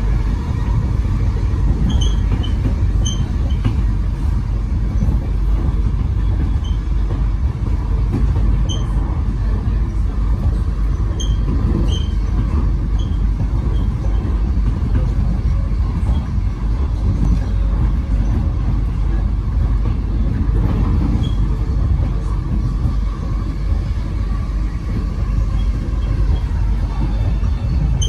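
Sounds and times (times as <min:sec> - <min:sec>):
train wheels rumbling on rail: 0:00.0 - 0:28.0
high-pitched wheel squeaks: 0:01.8 - 0:03.9, 0:06.2 - 0:07.1, 0:08.5 - 0:09.2, 0:10.8 - 0:14.4, 0:21.0 - 0:21.8.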